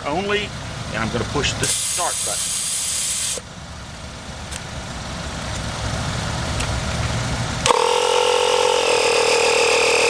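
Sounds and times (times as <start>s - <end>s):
tire inflator compressor buzzing: 1.6s - 3.5s, 7.6s - 10.0s.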